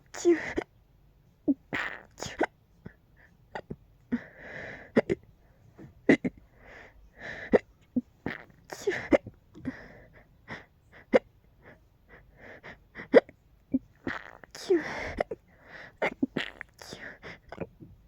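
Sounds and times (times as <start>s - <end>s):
person hiccuping: 1.5s - 2.5s, 8.0s - 9.3s, 13.7s - 15.4s, 16.0s - 16.8s.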